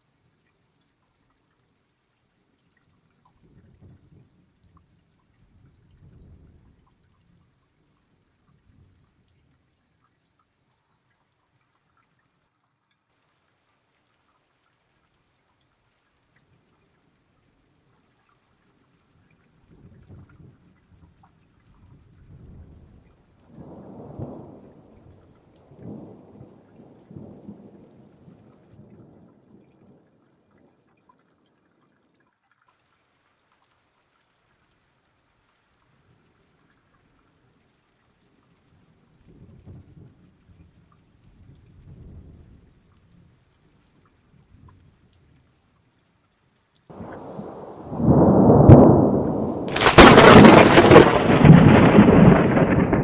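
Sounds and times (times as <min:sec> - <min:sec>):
water drips: 0:00.0 - 0:50.0
faint rain: 0:00.0 - 0:53.0
thunder rumble: 0:46.9 - 0:53.0.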